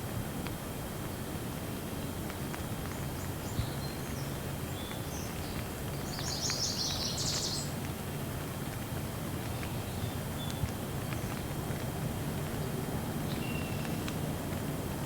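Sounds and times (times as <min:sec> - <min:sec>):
gentle rain: 0:00.0 - 0:15.0
small birds chirping: 0:03.2 - 0:07.8.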